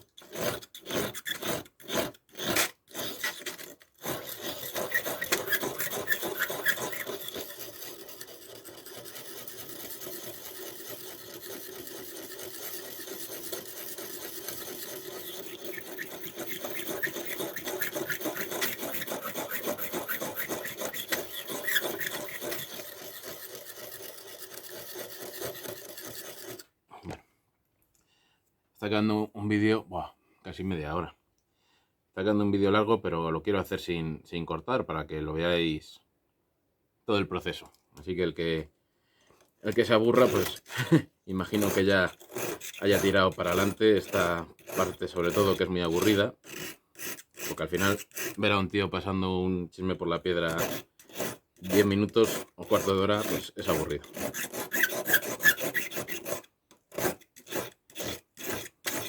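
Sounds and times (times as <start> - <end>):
knife blade scraping on sharpening stone: 0.2 - 10.1, 12.9 - 26.6, 50.5 - 59.0.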